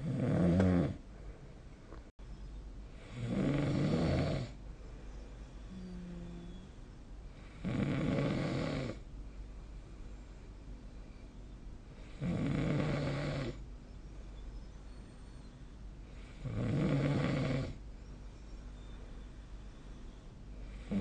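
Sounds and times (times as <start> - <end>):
person snoring: 0.0 - 1.0, 3.0 - 4.6, 5.7 - 6.6, 7.4 - 9.0, 12.0 - 13.6, 16.2 - 17.8, 20.7 - 21.0.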